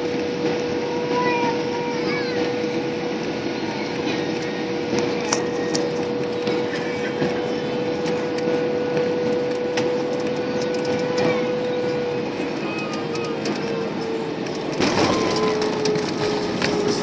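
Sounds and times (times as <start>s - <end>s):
airliner engine and airflow hum: 0.0s - 17.0s
light clicks in cabin: 9.3s - 17.0s.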